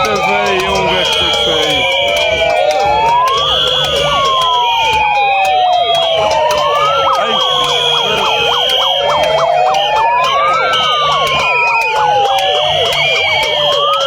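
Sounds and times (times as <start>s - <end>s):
sirens wailing: 0.0s - 14.0s
sirens yelping: 0.0s - 14.0s
steady high tone: 0.0s - 14.0s.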